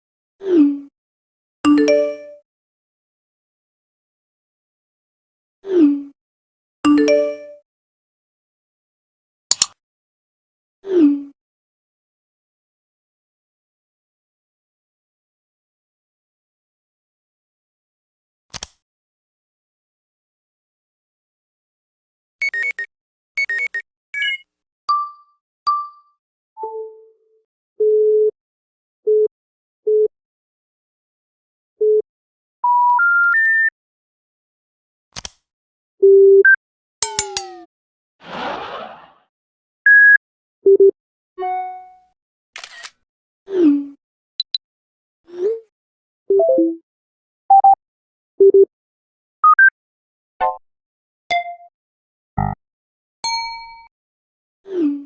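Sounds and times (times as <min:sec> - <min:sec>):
sharp click: 0:09.5 - 0:09.8, 0:18.5 - 0:18.8, 0:35.2 - 0:35.4
electronic beeps: 0:22.4 - 0:24.4
notification dings: 0:37.0 - 0:37.6
ringing ding: 0:37.0 - 0:37.6, 0:53.2 - 0:53.9.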